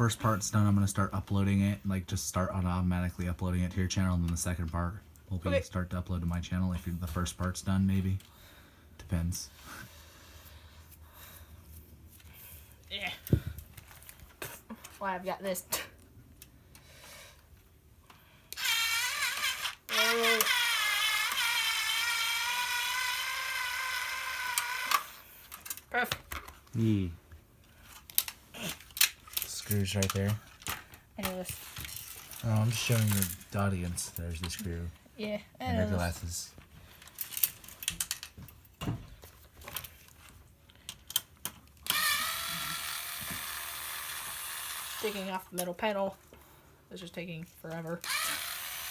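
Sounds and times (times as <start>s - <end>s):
small electric motor whining: 18.5s - 25.3s, 41.9s - 45.4s, 48.0s - 48.9s.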